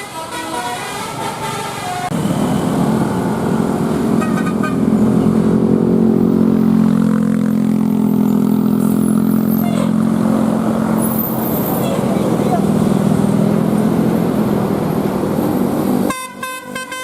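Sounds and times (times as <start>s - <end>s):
heavy vehicle engine droning: 0.0s - 16.8s.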